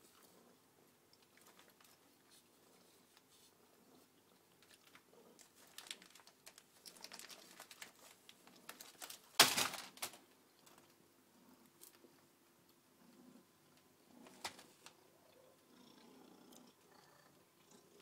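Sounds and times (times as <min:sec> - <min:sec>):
food packaging crinkling: 0:04.6 - 0:10.8.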